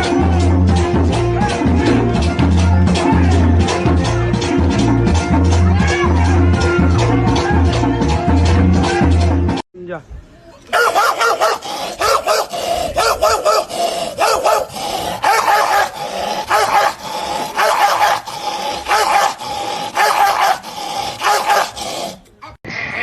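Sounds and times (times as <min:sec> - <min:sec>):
dog barking and yelping: 0:10.7 - 0:22.2.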